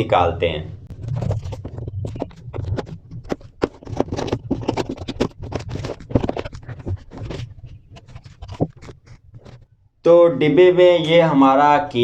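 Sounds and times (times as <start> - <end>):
cardboard box scraping and rubbing: 0.9 - 9.7.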